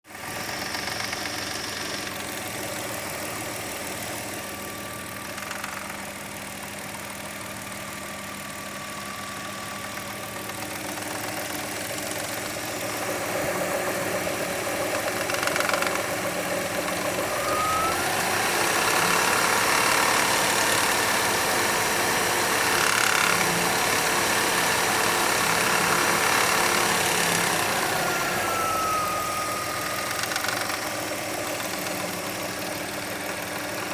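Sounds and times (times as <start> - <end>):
car engine idling: 0.1 - 22.7, 23.8 - 33.9
engine rattle: 0.1 - 33.9
short rising whines: 27.3 - 31.0.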